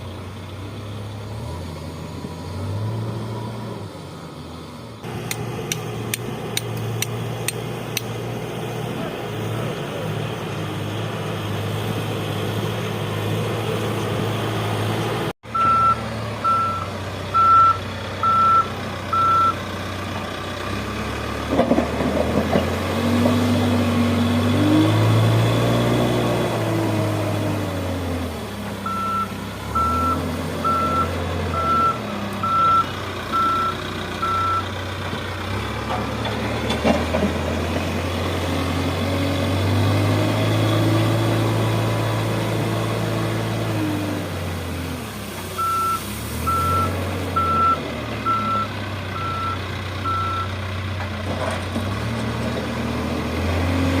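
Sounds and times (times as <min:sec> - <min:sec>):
construction machine engine revving: 0:00.0 - 0:54.0
reversing alarm beeps: 0:15.6 - 0:19.6, 0:28.9 - 0:34.7, 0:45.6 - 0:50.5.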